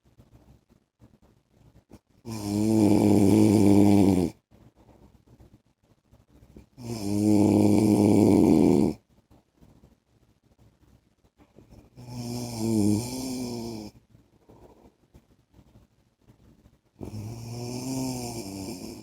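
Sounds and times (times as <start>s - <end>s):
man snoring: 2.3s - 4.4s, 6.8s - 9.0s, 12.0s - 14.0s, 17.0s - 19.0s.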